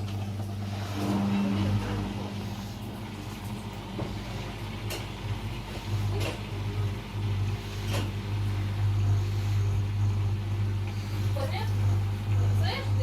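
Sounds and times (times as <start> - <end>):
washing machine humming: 0.0 - 13.0.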